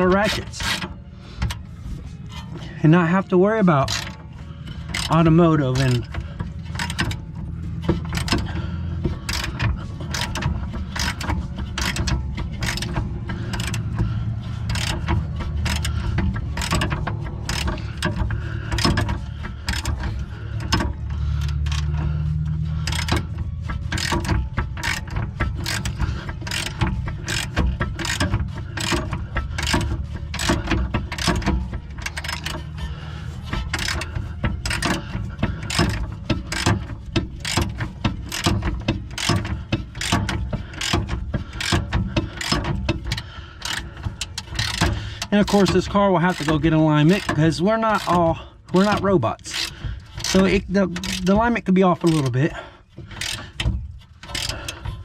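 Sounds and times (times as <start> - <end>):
hand ratchet clicking: 0.0 - 55.0.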